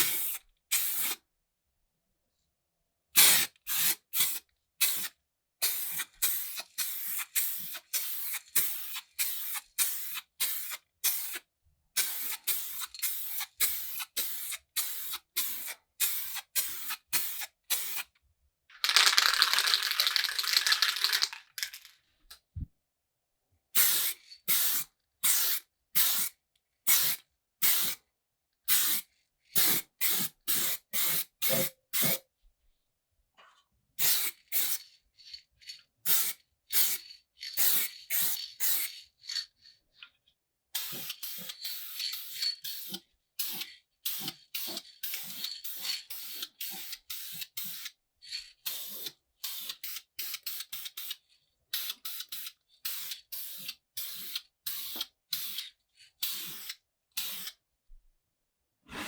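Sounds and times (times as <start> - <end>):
spray paint hissing: 0.1 - 1.2, 3.2 - 11.4, 12.0 - 18.0, 18.8 - 21.9, 34.0 - 34.8, 36.1 - 37.0, 37.6 - 38.9, 40.8 - 47.9, 48.7 - 51.2, 51.8 - 57.6.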